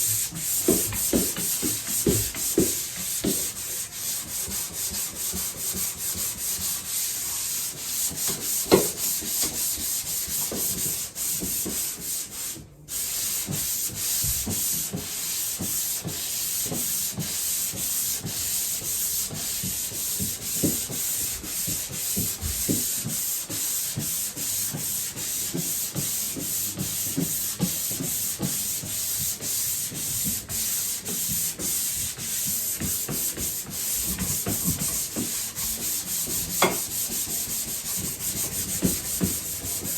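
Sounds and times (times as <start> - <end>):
sandpaper scratching drywall: 0.0 - 39.9.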